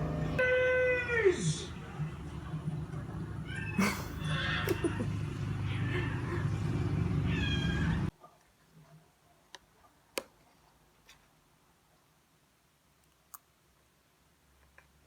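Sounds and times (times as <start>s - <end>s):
steady background hum: 0.0s - 8.1s
cat meowing: 3.4s - 5.0s, 7.2s - 8.1s.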